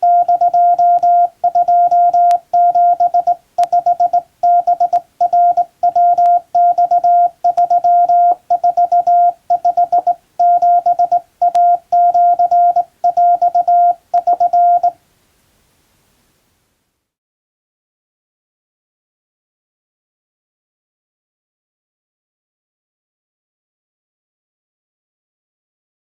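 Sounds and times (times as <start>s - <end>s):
morse code beeps: 0.0s - 15.0s.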